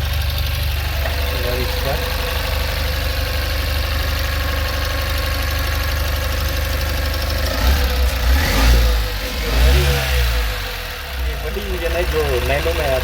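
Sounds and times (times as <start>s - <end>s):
small petrol engine idling: 0.0s - 13.0s
engine revving: 6.8s - 13.0s.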